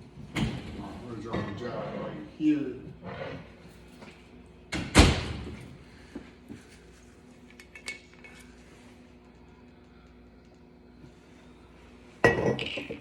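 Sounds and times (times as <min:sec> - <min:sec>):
glass bottle knocked on table: 0:12.2 - 0:13.0
glassware clicks and clinks: 0:12.2 - 0:13.0.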